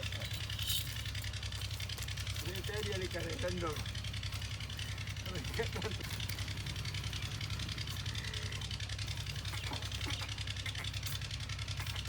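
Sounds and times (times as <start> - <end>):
engine idling with knocking beat: 0.0 - 12.0
faint voices: 7.2 - 11.2.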